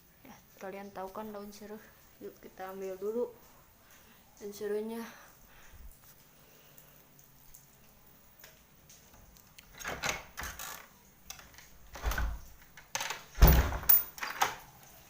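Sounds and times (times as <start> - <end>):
door rattling and scraping: 9.8 - 14.5
heavy door thump: 11.9 - 12.4, 13.4 - 14.1.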